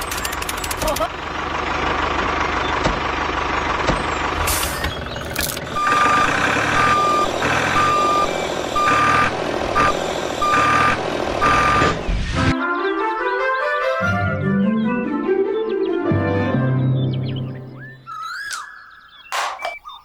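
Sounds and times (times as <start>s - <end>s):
engine noise: 0.0s - 12.1s
reversing alarm beeping: 5.7s - 12.0s.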